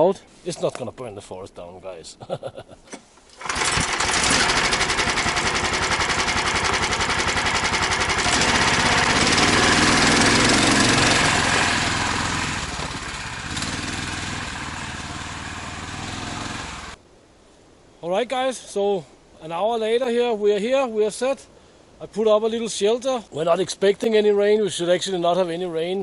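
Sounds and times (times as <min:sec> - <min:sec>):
small engine running: 0:03.4 - 0:17.0.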